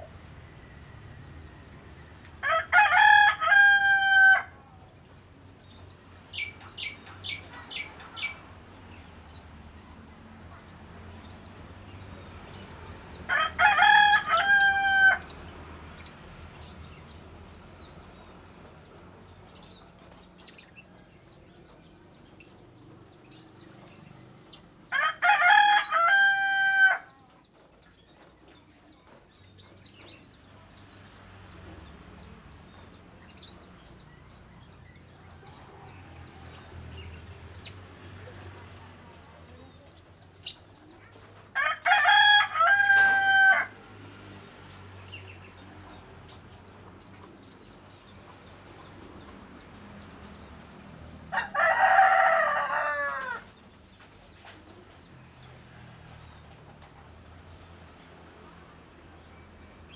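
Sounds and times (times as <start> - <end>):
small birds chirping: 0.0 - 59.9
rooster crowing: 2.4 - 4.6, 13.3 - 15.4, 24.9 - 27.1, 41.6 - 43.8, 51.3 - 53.5.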